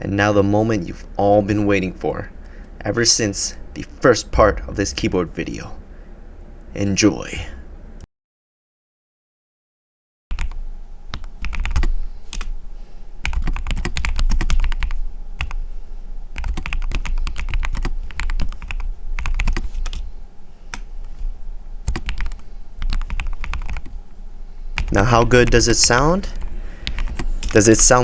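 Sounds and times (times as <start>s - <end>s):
mechanical keyboard typing: 10.3s - 12.5s, 13.2s - 15.6s, 16.4s - 20.0s, 21.8s - 24.0s.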